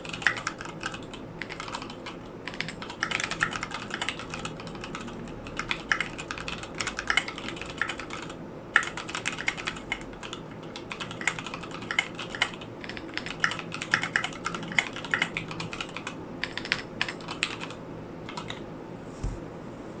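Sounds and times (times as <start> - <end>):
mechanical keyboard typing: 0.0 - 18.6.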